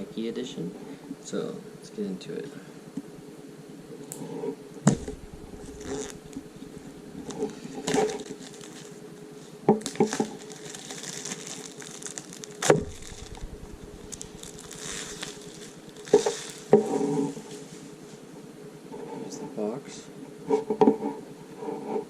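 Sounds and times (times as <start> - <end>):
packaging rustling: 4.9 - 9.0, 9.8 - 16.8.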